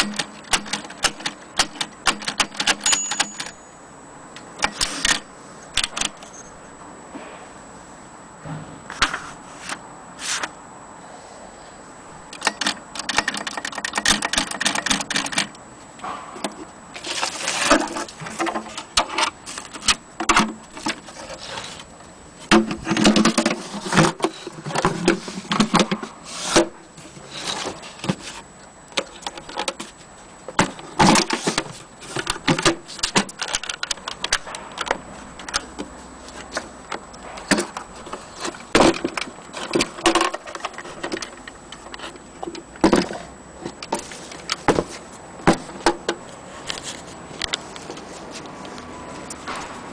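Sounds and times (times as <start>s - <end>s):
typewriter clicking: 0.0s - 3.6s, 4.6s - 6.2s, 12.3s - 15.6s.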